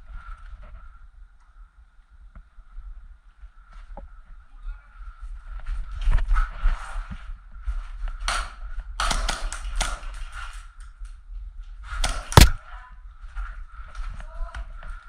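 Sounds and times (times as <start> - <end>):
airsoft guns firing: 8.3 - 10.2, 12.0 - 12.6.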